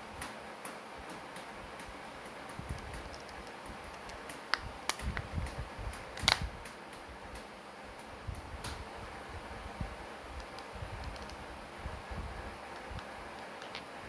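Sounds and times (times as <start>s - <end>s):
plastic key remote clicks: 2.7s - 7.0s.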